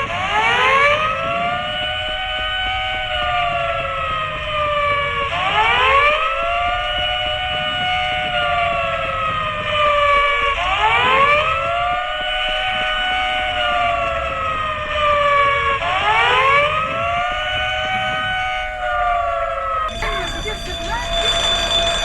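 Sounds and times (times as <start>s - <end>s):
wailing alarm siren: 0.0s - 22.0s.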